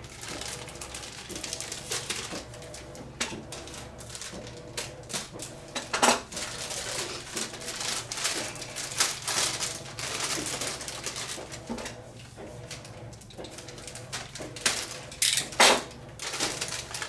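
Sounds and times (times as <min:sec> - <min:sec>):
plastic packaging crinkling: 0:00.0 - 0:05.4, 0:06.2 - 0:12.0, 0:13.5 - 0:17.0
handling knocks and clicks: 0:15.2 - 0:15.8.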